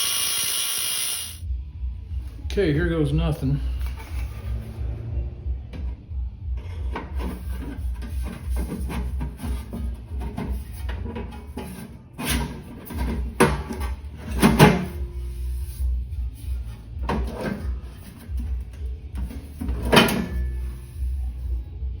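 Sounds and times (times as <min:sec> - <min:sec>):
sheet metal parts clanking: 0:06.8 - 0:15.8, 0:16.4 - 0:21.0.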